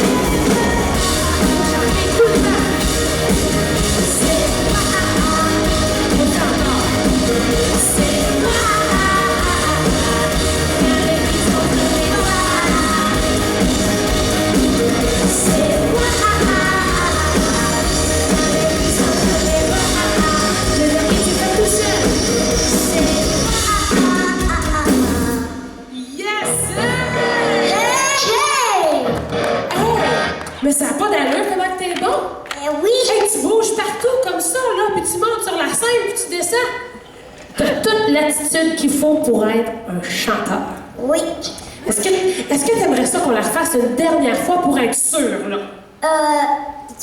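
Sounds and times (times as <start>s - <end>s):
person singing: 0.0s - 25.5s
live pop-rock band: 0.0s - 30.6s.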